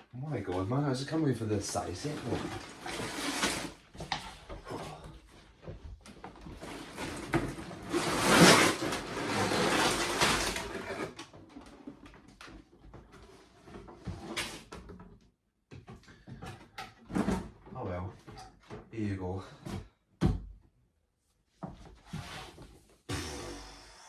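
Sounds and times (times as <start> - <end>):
plastic bags rustling: 1.6 - 4.1, 6.6 - 11.2.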